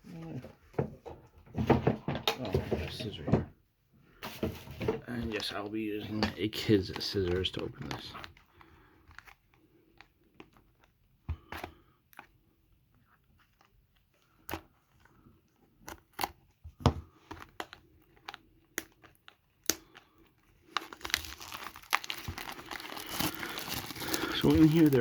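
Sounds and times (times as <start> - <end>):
plastic wrapping crinkling and tearing: 17.4 - 25.0.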